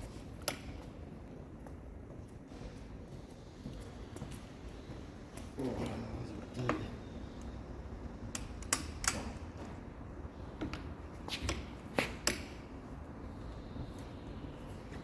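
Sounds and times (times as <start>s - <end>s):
metallic clicks from hand tools: 8.3s - 9.3s.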